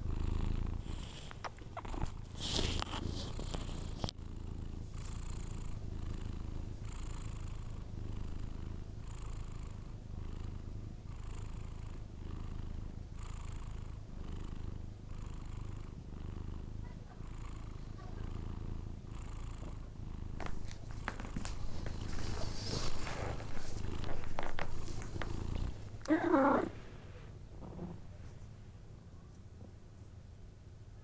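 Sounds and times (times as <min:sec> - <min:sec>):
cat breathing with low rumble: 0:00.0 - 0:01.4, 0:13.6 - 0:27.4.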